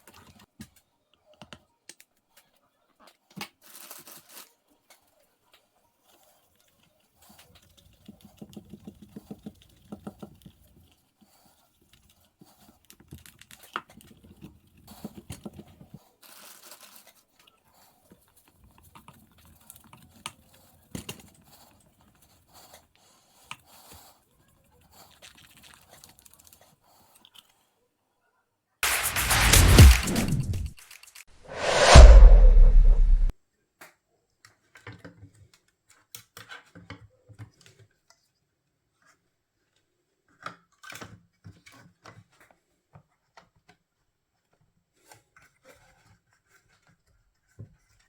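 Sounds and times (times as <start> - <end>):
short hiss: 28.8 - 33.3.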